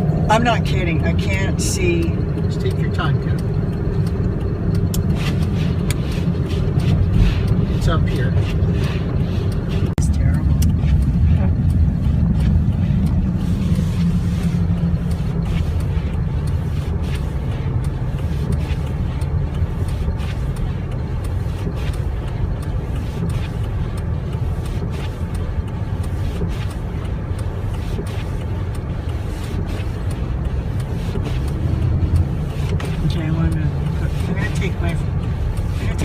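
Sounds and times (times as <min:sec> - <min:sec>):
car engine and road rumble: 0:00.0 - 0:36.0.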